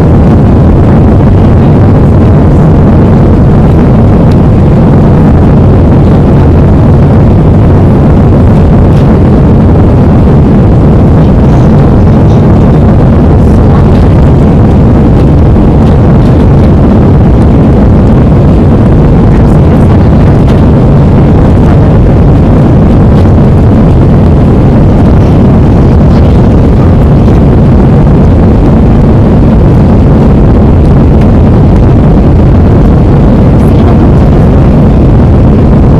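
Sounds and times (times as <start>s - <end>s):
jet engine cabin roar: 0.0s - 35.9s.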